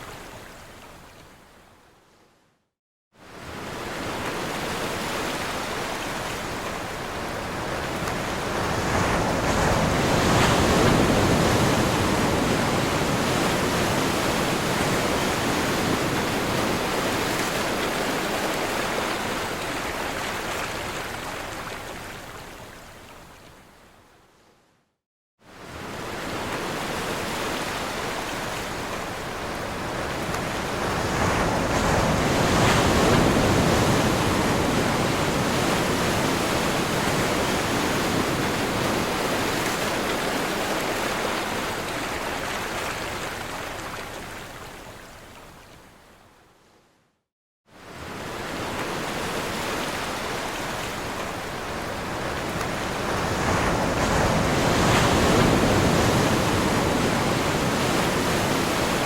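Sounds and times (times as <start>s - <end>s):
ocean waves breaking: 47.8s - 59.0s.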